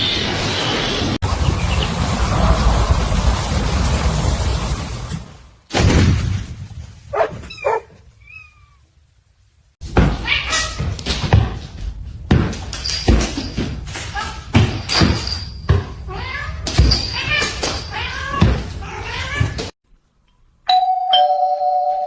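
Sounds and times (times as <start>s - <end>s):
cat meowing: 7.4s - 8.9s.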